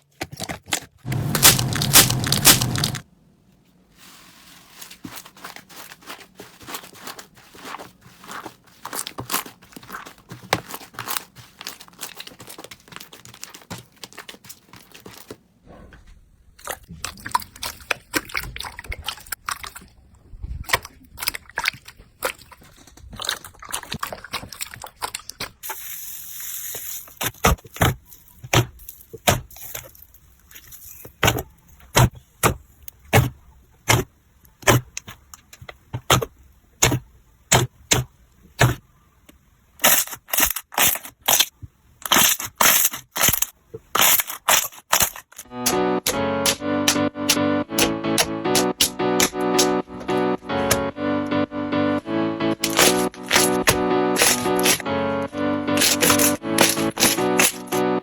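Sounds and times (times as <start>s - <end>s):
slime crackling and popping: 1.1s - 3.0s, 52.6s - 54.9s
sharp clicks: 52.6s - 54.9s.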